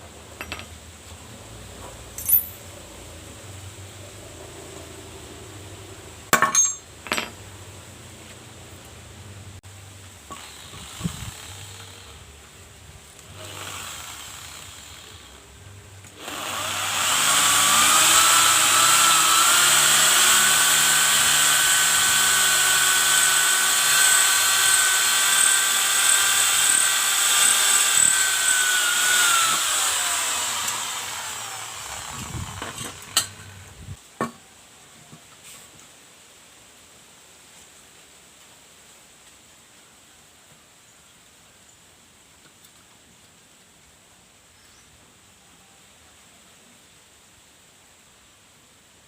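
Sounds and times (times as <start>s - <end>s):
high-speed motor whining: 16.2s - 33.8s.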